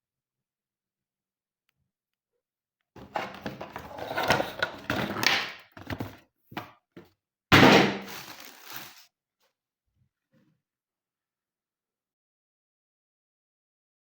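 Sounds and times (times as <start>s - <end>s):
packaging rustling and knocks: 3.0s - 6.2s, 7.6s - 9.0s
loud thunk: 7.5s - 8.1s.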